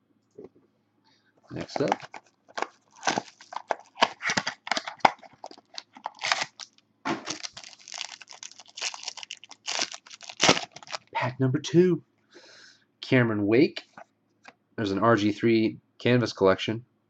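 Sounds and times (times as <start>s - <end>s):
wrapper tearing and crinkling: 1.6s - 11.1s.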